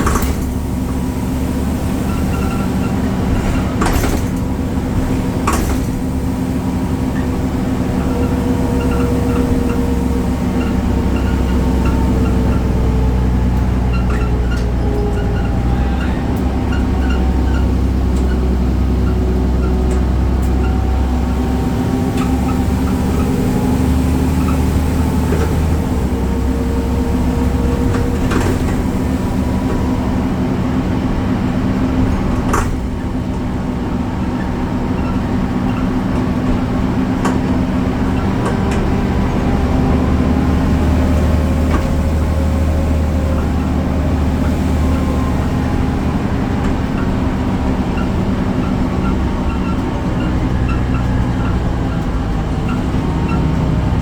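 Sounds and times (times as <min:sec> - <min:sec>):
faint whining tones: 0:00.0 - 0:33.3
bus engine droning: 0:00.0 - 0:54.0.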